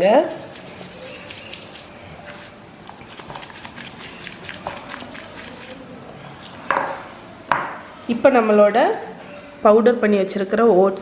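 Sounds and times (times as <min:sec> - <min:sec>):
spatula scraping mixing bowl: 0:00.0 - 0:07.2.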